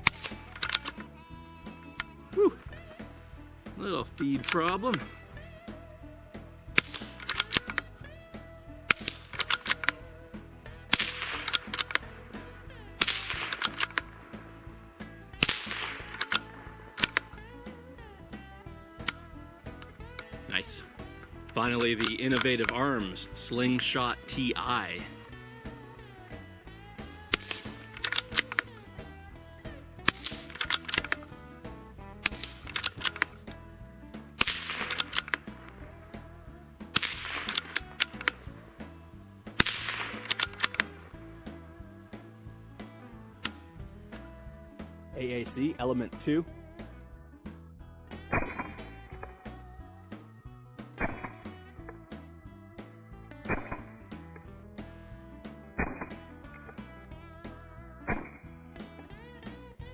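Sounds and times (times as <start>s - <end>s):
suppressed pistol shots: 0.0s - 1.0s, 6.7s - 7.9s, 8.9s - 17.9s, 27.1s - 28.9s, 30.0s - 31.4s, 32.2s - 33.6s, 34.4s - 36.3s, 36.9s - 38.9s, 39.5s - 41.8s, 48.3s - 49.3s, 53.4s - 53.9s, 55.8s - 56.2s
music: 0.0s - 59.9s.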